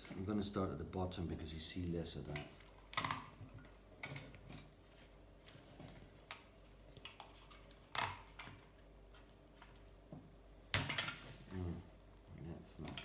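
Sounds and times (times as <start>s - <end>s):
adhesive tape crackling: 2.3s - 9.8s
tape rustle: 2.3s - 10.0s.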